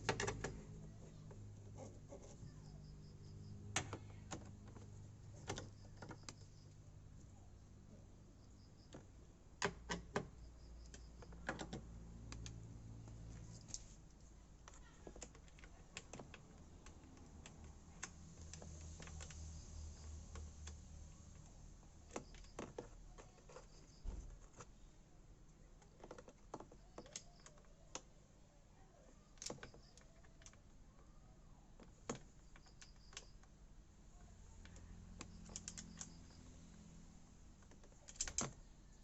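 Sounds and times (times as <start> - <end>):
faint low hum: 0.0 - 39.0
light clicks and taps: 8.7 - 24.7.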